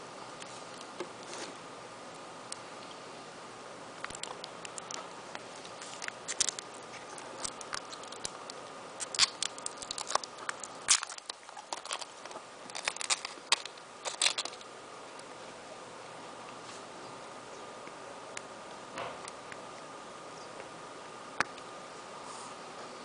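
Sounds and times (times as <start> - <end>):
faint steady hum: 0.0 - 23.0
small objects clicking and crinkling: 4.0 - 15.3.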